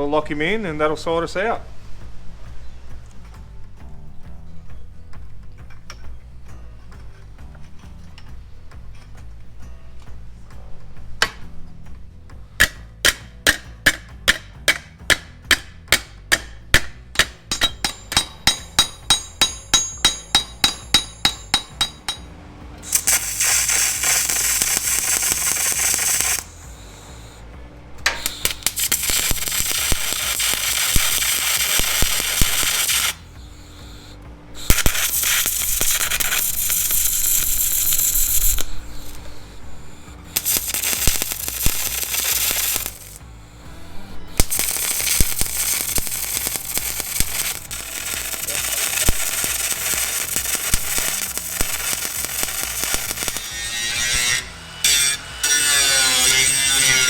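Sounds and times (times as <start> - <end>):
hammer blows on steel sheet: 12.3 - 57.0
welding crackle: 12.6 - 27.4, 28.1 - 57.0.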